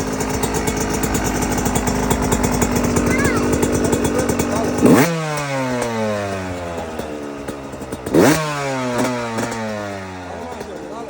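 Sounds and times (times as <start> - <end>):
two-stroke engine revving: 0.0 - 11.0.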